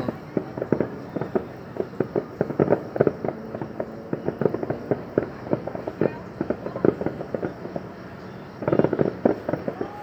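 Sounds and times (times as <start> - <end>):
fireworks popping and banging: 0.0 - 10.0.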